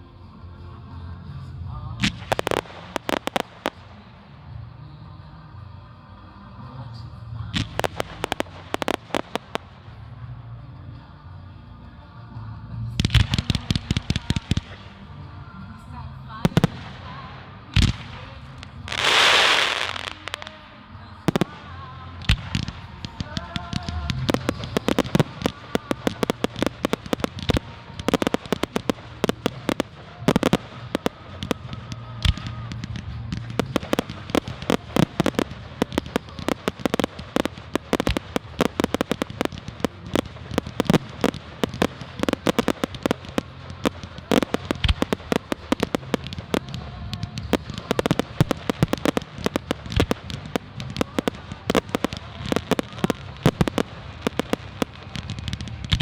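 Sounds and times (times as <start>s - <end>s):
loud fireworks booms: 2.0s - 4.0s, 7.6s - 10.0s, 16.4s - 20.6s, 21.3s - 56.0s
fireworks bangs and crackles: 2.0s - 4.7s, 7.0s - 10.6s, 12.9s - 15.0s, 16.4s - 56.0s.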